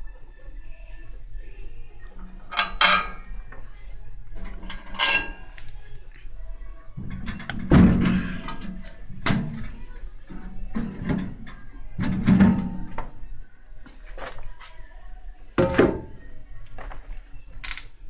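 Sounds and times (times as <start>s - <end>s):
steel parts clanking and scraping: 2.2s - 3.7s, 4.3s - 6.3s.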